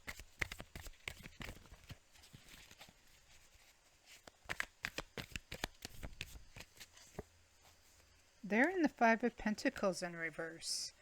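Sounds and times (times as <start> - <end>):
cards being shuffled: 0.0 - 7.3.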